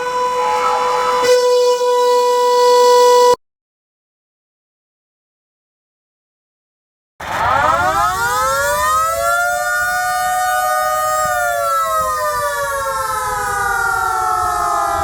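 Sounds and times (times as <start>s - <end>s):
two-tone air raid siren wailing: 0.0s - 3.4s, 7.2s - 15.0s.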